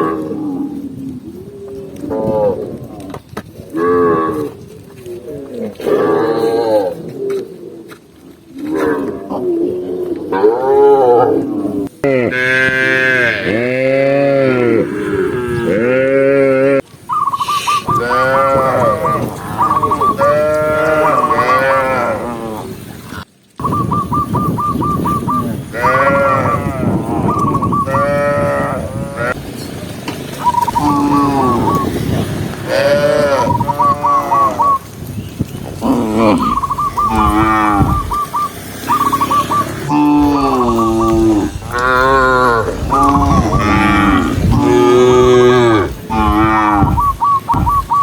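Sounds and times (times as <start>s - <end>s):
cattle mooing: 0.0s - 1.0s, 5.2s - 7.2s, 8.7s - 16.8s, 17.8s - 22.8s, 25.7s - 29.4s, 30.7s - 31.9s, 32.6s - 34.8s, 35.8s - 38.3s, 38.9s - 47.8s
high repeated chirps: 36.4s - 42.2s, 46.9s - 48.0s.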